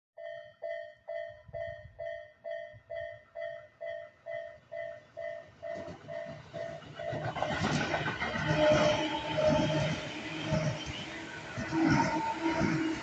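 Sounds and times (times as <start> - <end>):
level-crossing warning bell ringing: 0.2 - 13.0
approaching train rumble: 4.2 - 13.0.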